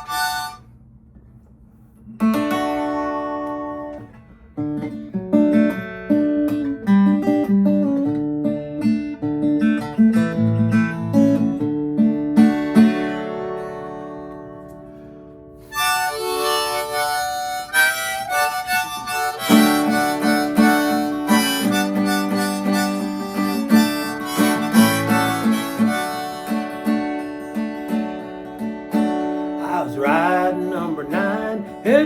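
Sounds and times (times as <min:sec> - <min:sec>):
harmonica melody: 0:00.0 - 0:00.7, 0:15.6 - 0:32.0
acoustic guitar strumming: 0:00.0 - 0:00.8, 0:02.2 - 0:32.0.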